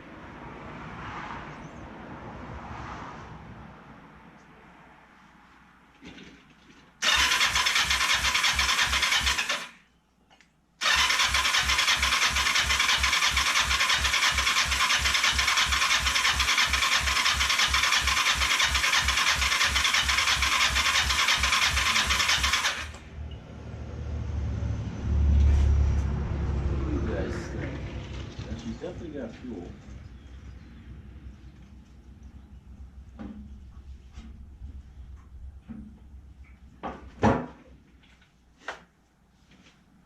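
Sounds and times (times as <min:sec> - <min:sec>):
motorcycle engine cranking: 0:07.0 - 0:09.8, 0:10.8 - 0:23.1.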